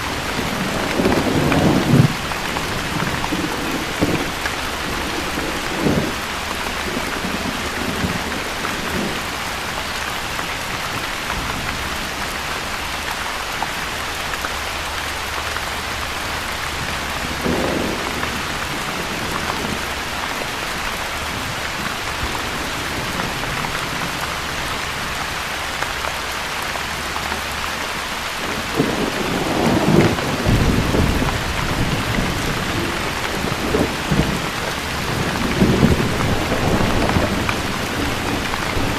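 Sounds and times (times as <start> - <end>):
thunder rumbling: 0.0 - 12.1, 16.6 - 25.0, 28.4 - 38.9
steady rain falling: 0.0 - 38.9.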